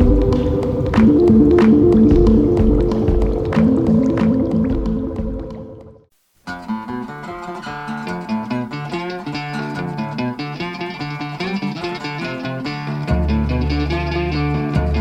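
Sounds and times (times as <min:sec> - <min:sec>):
plucked string instrumental: 0:00.0 - 0:05.9, 0:06.5 - 0:15.0.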